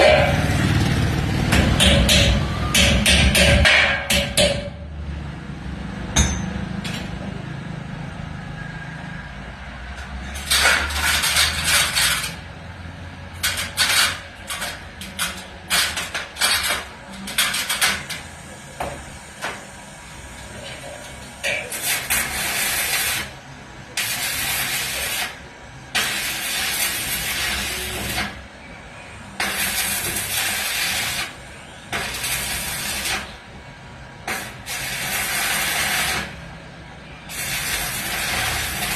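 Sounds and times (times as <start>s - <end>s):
welding arc crackling and hissing: 10.0s - 28.4s, 29.2s - 38.9s.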